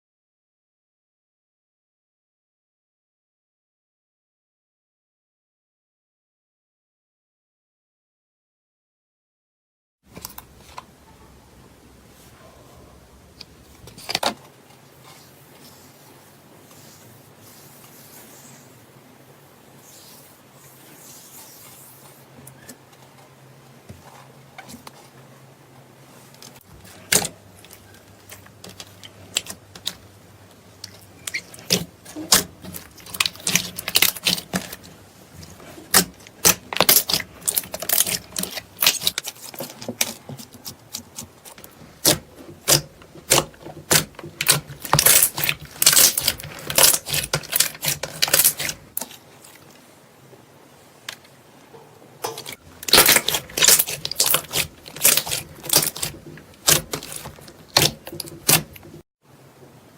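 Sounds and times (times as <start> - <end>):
slime squished by hand: 30.8 - 49.5, 52.4 - 59.0.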